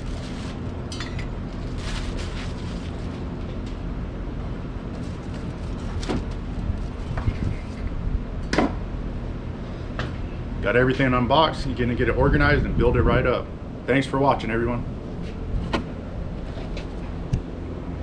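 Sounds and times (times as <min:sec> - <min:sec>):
packaging rustling: 0:00.0 - 0:00.8, 0:01.4 - 0:03.4
low background hum: 0:00.0 - 0:18.0.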